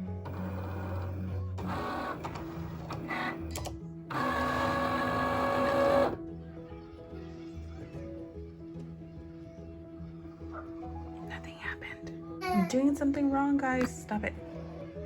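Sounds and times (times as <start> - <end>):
cutting machine motors whirring: 0.0 - 6.2.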